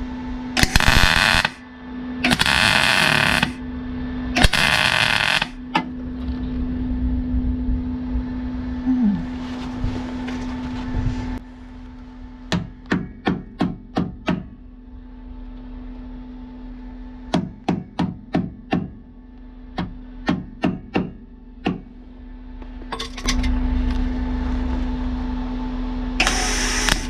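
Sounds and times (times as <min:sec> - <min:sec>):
steady hum: 0:00.0 - 0:27.0
mig welding crackle: 0:00.6 - 0:01.6, 0:02.2 - 0:03.6, 0:04.4 - 0:05.6, 0:26.2 - 0:27.0.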